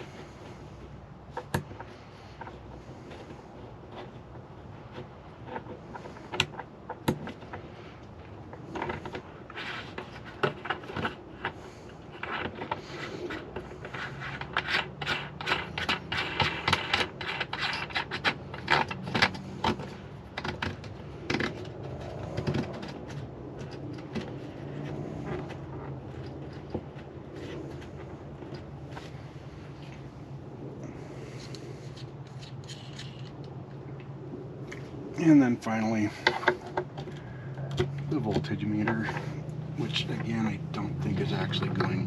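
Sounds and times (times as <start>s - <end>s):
small parts clicking and scraping: 1.3s - 30.2s, 30.9s - 34.1s.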